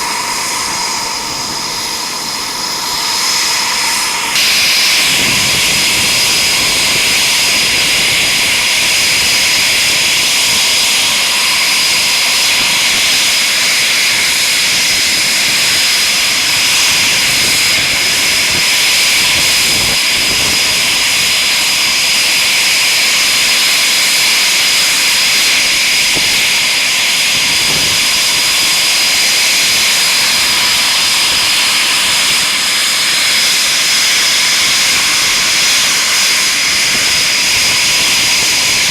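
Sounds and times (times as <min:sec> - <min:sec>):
high-pitched jet whine: 0:00.0 - 0:38.9
jet engine roar: 0:00.0 - 0:38.9.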